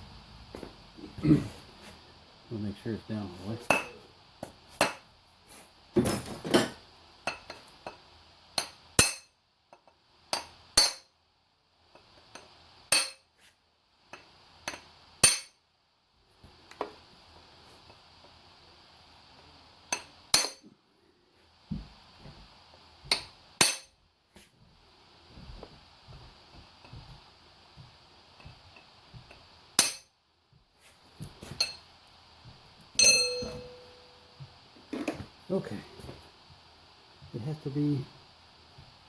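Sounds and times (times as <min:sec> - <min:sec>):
hammer tapping metal: 0:03.7 - 0:04.0, 0:08.6 - 0:09.3, 0:12.9 - 0:13.3, 0:19.9 - 0:20.6, 0:23.1 - 0:23.9, 0:29.8 - 0:30.1, 0:31.6 - 0:31.8, 0:33.0 - 0:34.2.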